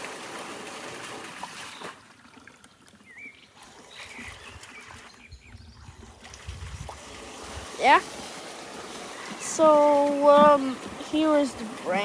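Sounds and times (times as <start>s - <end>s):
fountain water flowing: 0.0s - 1.3s, 7.0s - 12.0s
faint water trickle: 0.0s - 12.0s.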